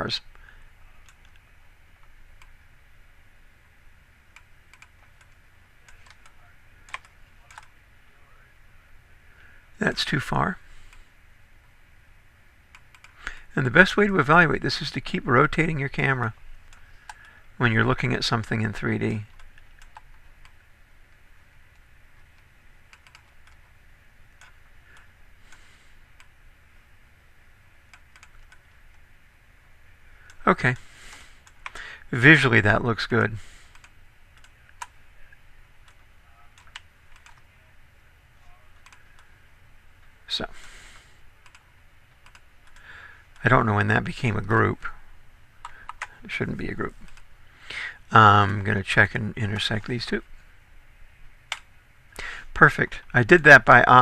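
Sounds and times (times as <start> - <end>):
faint steady hum: 0.0 - 54.0
computer mouse and keyboard clicks: 4.3 - 7.7, 12.7 - 13.2, 19.3 - 20.6, 22.2 - 23.7, 24.4 - 25.1, 27.9 - 29.0, 35.8 - 37.5, 38.8 - 39.3, 41.4 - 42.8, 45.6 - 46.1
mouse and keyboard clicks: 36.6 - 37.5.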